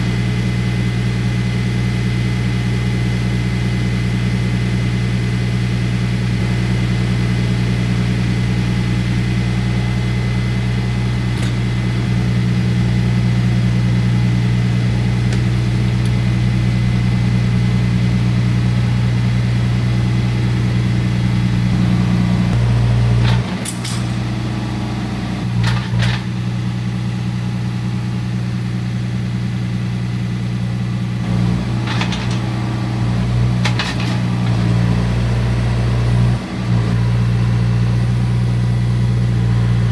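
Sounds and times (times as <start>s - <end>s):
tractor diesel engine running: 0.0s - 39.9s
sharp knocks and clanks: 11.3s - 12.2s, 23.2s - 24.3s, 25.4s - 26.4s, 31.7s - 32.7s, 33.6s - 34.6s.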